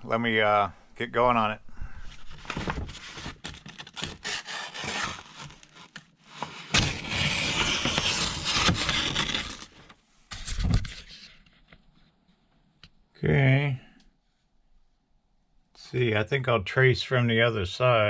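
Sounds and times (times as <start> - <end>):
heavy paper rustling and scraping: 2.0 - 11.3.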